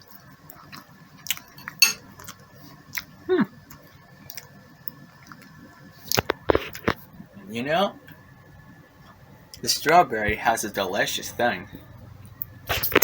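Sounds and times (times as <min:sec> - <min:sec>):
person murmuring mm: 0:03.3 - 0:03.6.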